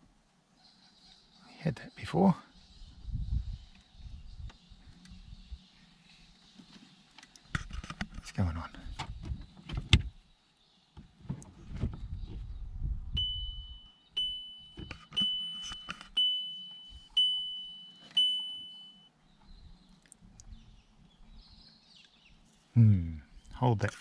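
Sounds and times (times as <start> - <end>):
low rustling and knocks: 11.0 - 12.7
electronic chime beeping: 13.2 - 19.1.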